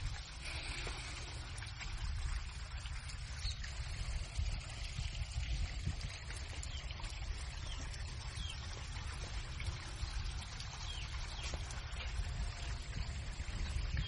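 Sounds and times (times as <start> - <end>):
water splashing and trickling: 0.0 - 14.0.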